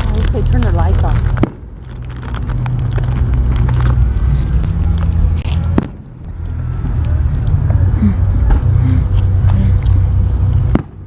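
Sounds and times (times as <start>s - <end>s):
fireworks crackling pops: 0.0s - 7.1s
steady low rumble: 0.0s - 11.0s.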